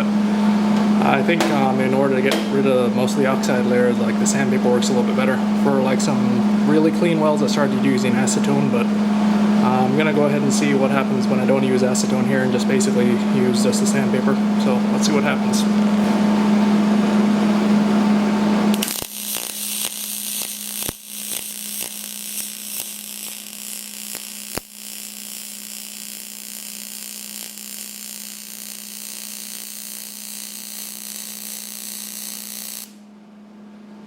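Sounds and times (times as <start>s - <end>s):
steady low hum: 0.0s - 34.0s
welding arc buzzing hiss: 17.5s - 33.0s
welding arc sharp pops: 18.7s - 33.0s.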